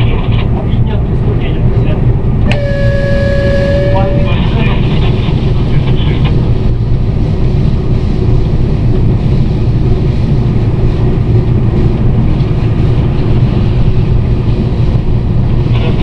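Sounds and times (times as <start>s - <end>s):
locomotive cab running rumble: 0.0s - 16.0s.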